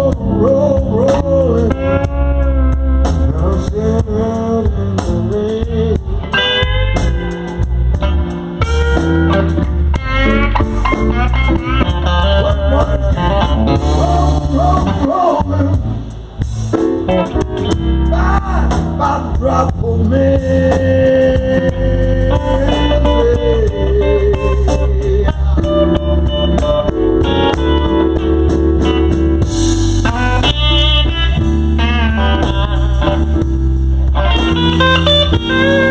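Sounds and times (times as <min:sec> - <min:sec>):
bass line: 0:00.0 - 0:35.9
slow electric blues band: 0:00.0 - 0:35.9
lead guitar bent-note fills: 0:06.3 - 0:15.8, 0:22.1 - 0:35.9
singing vocals: 0:12.2 - 0:16.0, 0:18.0 - 0:25.8.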